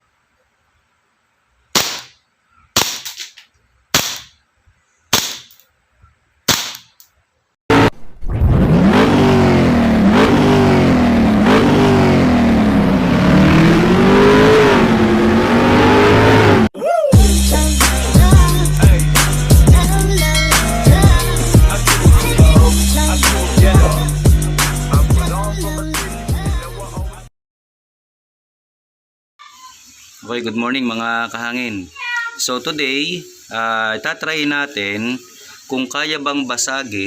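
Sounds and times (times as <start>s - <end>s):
sharp shot-like cracks: 1.7s - 4.4s, 5.1s - 5.6s, 6.5s - 7.0s.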